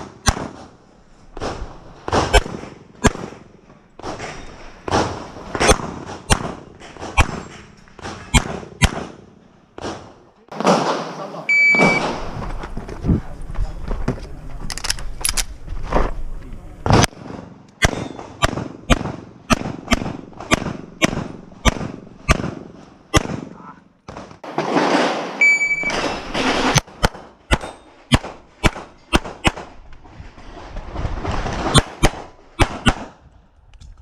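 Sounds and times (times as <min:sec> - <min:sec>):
pistol shots: 0:04.8 - 0:12.3, 0:17.0 - 0:24.3, 0:26.8 - 0:29.7, 0:31.6 - 0:33.2
short ringing tone: 0:11.5 - 0:12.0, 0:25.4 - 0:26.1.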